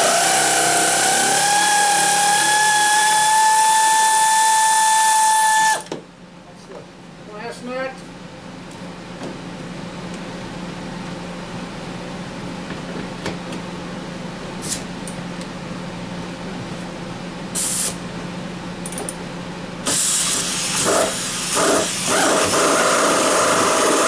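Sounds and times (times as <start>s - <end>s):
aerosol spray can hissing: 17.6s - 18.0s.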